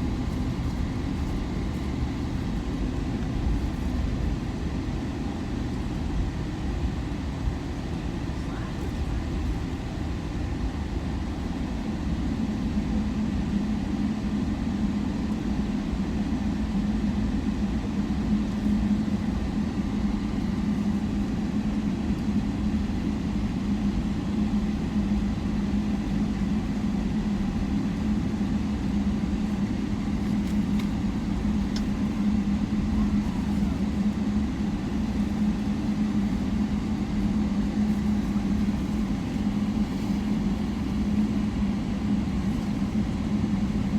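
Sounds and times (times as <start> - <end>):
airliner engine cabin drone: 0.0 - 43.9.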